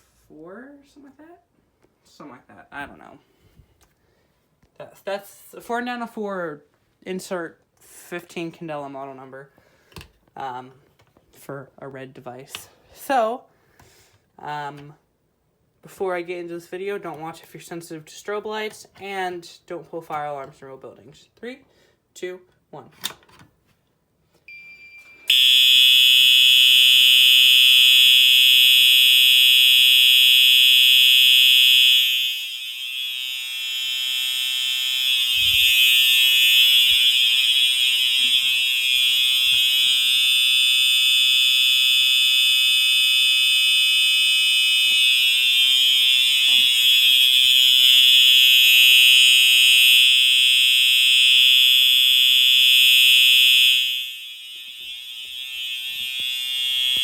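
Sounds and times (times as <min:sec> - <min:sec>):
fire alarm horn buzzing: 0:24.5 - 0:57.0.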